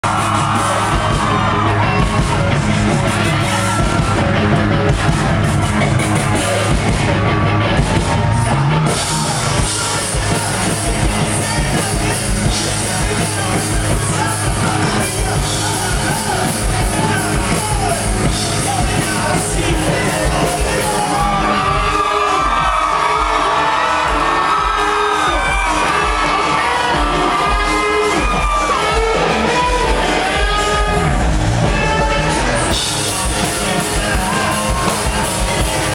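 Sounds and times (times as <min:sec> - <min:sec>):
live rock band playing: 0:00.0 - 0:35.9
person singing: 0:08.8 - 0:23.4, 0:24.0 - 0:35.9.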